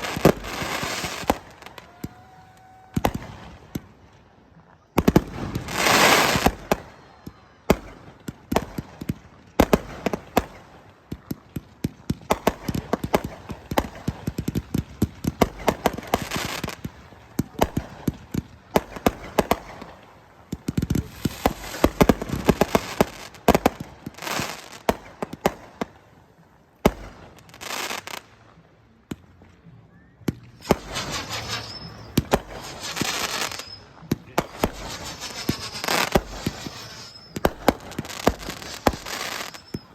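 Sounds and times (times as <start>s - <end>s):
fireworks bangs: 0.0s - 28.4s, 30.2s - 39.9s
fireworks crackling: 0.0s - 39.9s.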